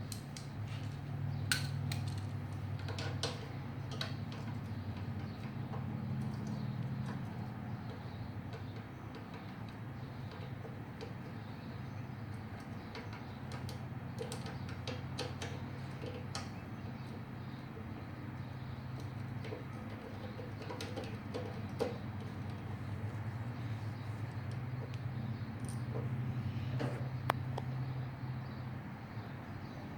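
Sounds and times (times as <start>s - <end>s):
hand tools tapping on metal: 0.0s - 27.7s
faint bird calls: 14.5s - 28.6s
steady low hum: 15.5s - 29.9s.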